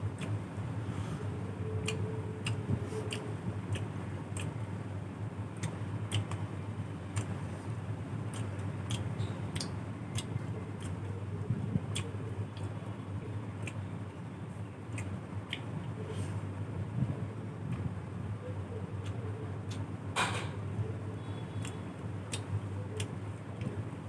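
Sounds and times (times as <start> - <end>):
steady low hum: 0.0 - 24.0
person chewing food: 1.2 - 4.9, 5.5 - 14.0, 14.8 - 16.4, 19.0 - 20.0, 21.4 - 24.0
wet mouth clicks and lip smacks: 1.8 - 4.6, 5.6 - 6.4, 8.3 - 11.0.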